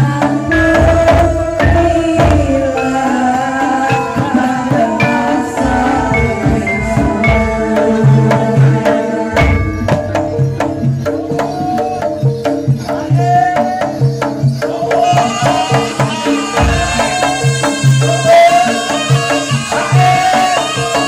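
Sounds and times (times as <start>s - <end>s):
hand drum strokes: 0.0s - 20.6s
gliding melody line: 2.0s - 12.6s.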